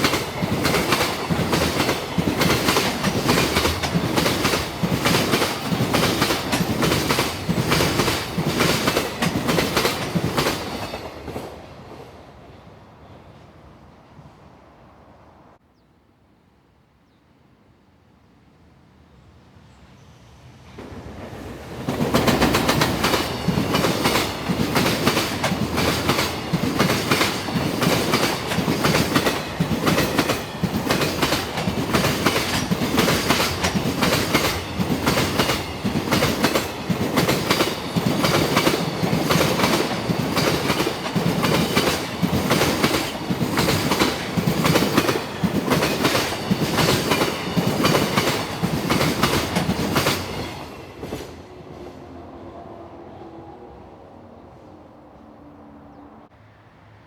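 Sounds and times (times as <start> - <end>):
freight train wheels clicking: 0.0 - 12.0, 20.8 - 51.6.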